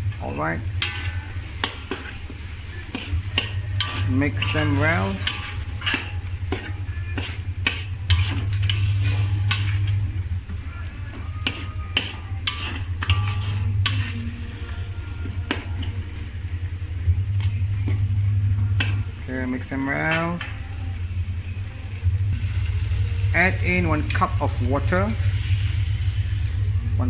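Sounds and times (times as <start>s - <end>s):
utensil scraping a pan: 0.0s - 16.4s, 17.4s - 20.9s
gravy sizzling: 0.0s - 27.0s
steady low hum: 0.0s - 27.0s.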